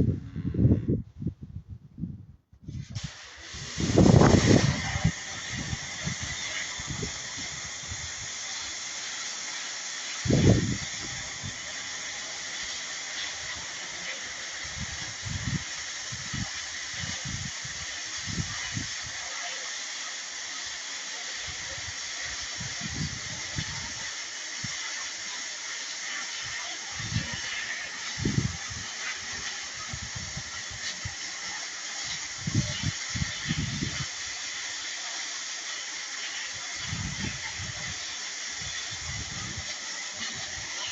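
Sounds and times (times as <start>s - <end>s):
short low rumbles: 0.0s - 3.0s
pressure washer water jet hissing: 2.7s - 40.9s.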